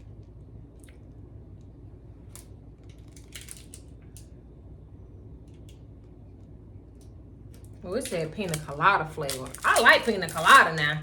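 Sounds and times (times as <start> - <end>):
low background hum: 0.0 - 11.0
candy wrapper crinkling: 2.8 - 4.1, 7.6 - 11.0.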